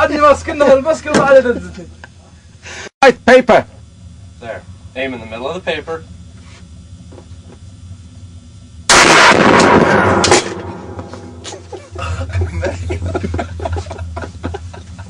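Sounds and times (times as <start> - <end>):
loud gunshot: 8.9 - 11.4.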